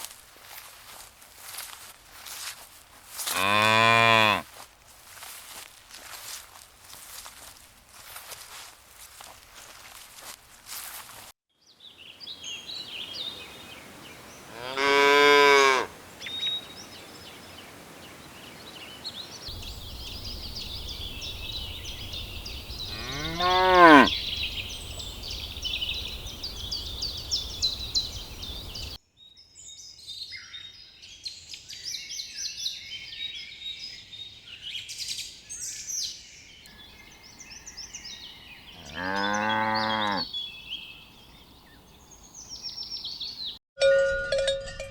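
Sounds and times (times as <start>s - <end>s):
birds chirping: 0.7s - 4.4s, 11.8s - 29.0s, 35.5s - 43.6s
cows mooing: 3.3s - 4.4s, 14.5s - 15.9s, 22.9s - 24.1s, 38.7s - 40.3s.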